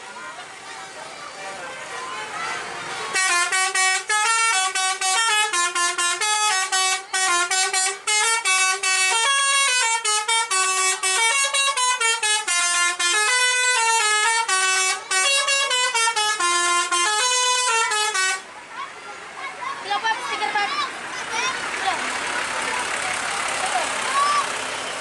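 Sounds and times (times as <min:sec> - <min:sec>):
bus horn playing a tune: 0:03.0 - 0:18.5.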